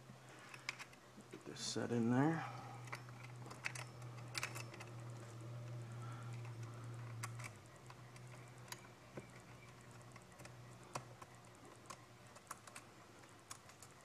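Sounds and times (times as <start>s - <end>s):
low steady hum: 0.0s - 14.0s
chainsaw chain clicks and ticks: 2.8s - 5.2s.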